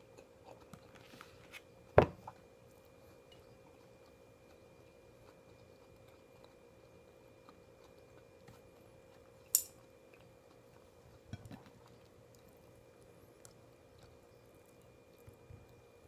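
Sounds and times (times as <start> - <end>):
faint steady hum: 0.0 - 16.0.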